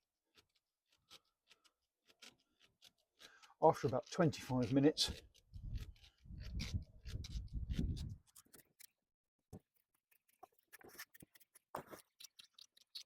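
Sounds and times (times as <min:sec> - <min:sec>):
gear knob rubbing creak: 0:00.3 - 0:08.9
small clicks: 0:00.3 - 0:09.0, 0:10.0 - 0:13.0.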